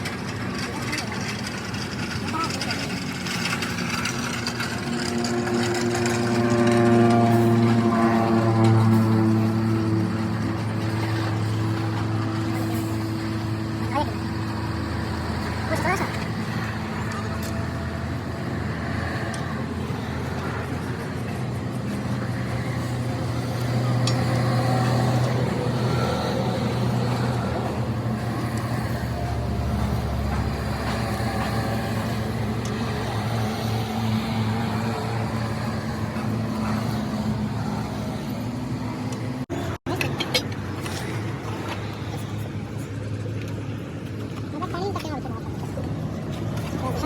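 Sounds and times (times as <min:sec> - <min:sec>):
vehicle engine humming: 0:00.0 - 0:47.0.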